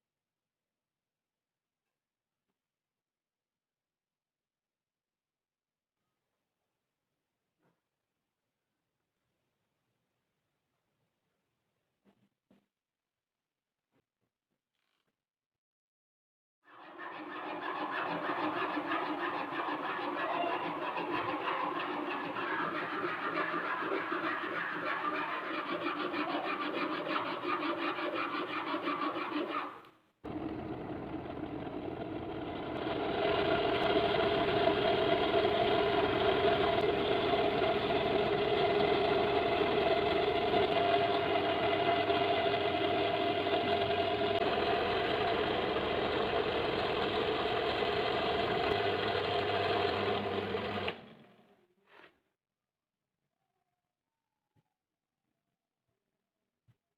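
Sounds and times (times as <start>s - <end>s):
steady motor sound: 16.8s - 29.6s, 30.3s - 51.3s
power tool with rhythmic chatter: 16.8s - 51.4s.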